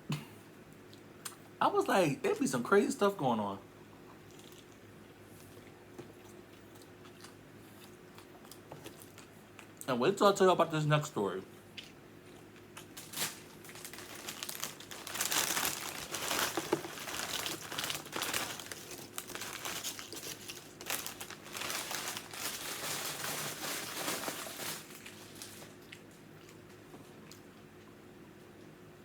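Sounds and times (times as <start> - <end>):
wrapper crinkling and rustling: 12.8 - 25.9
wrapper tearing: 12.9 - 25.8.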